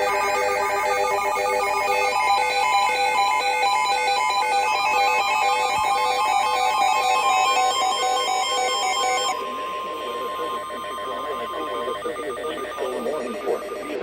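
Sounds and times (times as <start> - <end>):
pulsing electronic alert beeps: 0.0 - 14.0
steady alarm tone: 0.0 - 14.0
broadcast voice: 9.2 - 14.0
radio hiss: 9.3 - 14.0.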